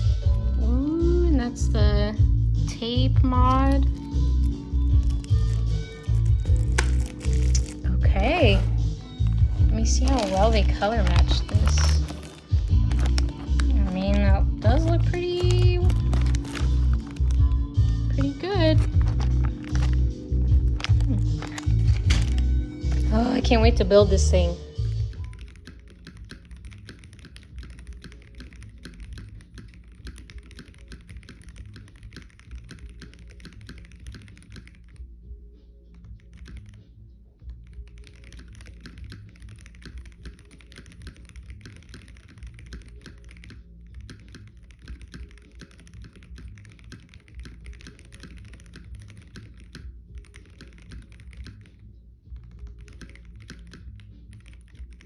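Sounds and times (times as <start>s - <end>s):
mechanical keyboard typing: 3.4s - 23.6s, 25.1s - 35.0s, 36.2s - 36.8s, 37.7s - 51.8s, 52.4s - 55.0s.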